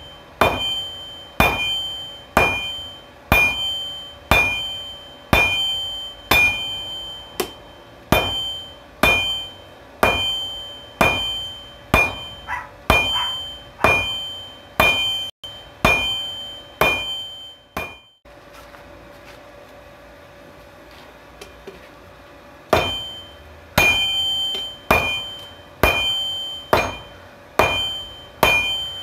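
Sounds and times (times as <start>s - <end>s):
hammer striking hot steel on anvil: 0.0s - 18.2s, 22.7s - 29.0s.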